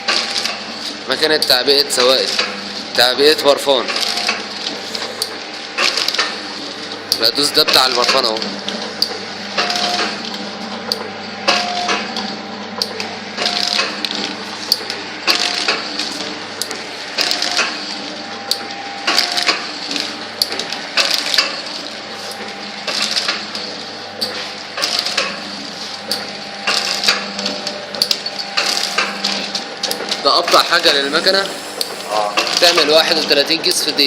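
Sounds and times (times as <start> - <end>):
steady motor hum: 0.0 - 34.0
machine clacks: 0.1 - 34.0
brief machine tone: 9.6 - 10.2, 11.5 - 12.1, 13.4 - 14.0, 17.2 - 17.8.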